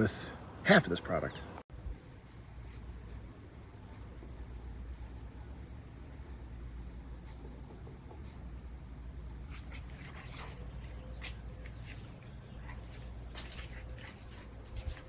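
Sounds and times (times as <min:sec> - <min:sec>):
steady high hiss: 0:01.7 - 0:15.0.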